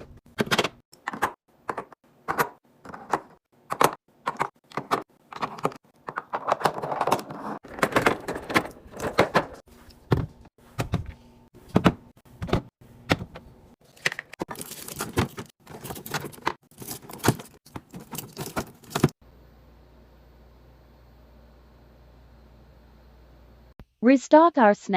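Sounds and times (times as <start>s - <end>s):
packaging rustling: 13.8s - 19.2s.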